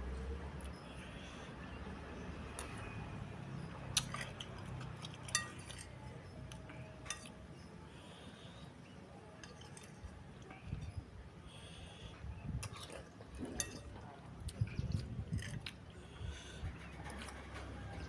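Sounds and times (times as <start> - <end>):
soft chewing: 2.5 - 18.0
spoon clinking on bowl: 5.3 - 5.9.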